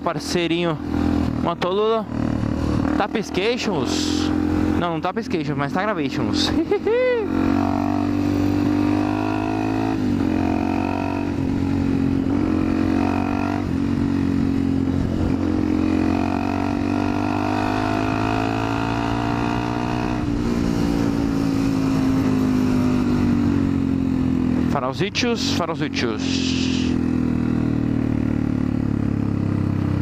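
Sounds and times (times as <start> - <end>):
motorcycle engine running: 0.0 - 30.0
wind noise: 19.6 - 23.6.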